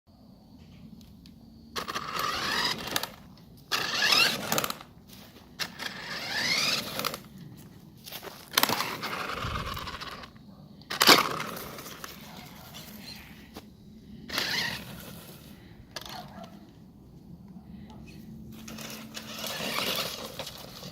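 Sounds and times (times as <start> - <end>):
small atv engine revving: 1.8 - 7.3, 8.5 - 10.3, 10.9 - 13.2, 14.3 - 16.4, 18.5 - 20.9.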